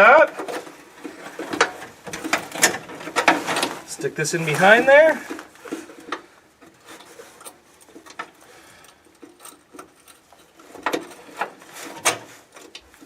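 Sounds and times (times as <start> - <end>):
hand tools clicking and tapping: 5.2 - 13.0.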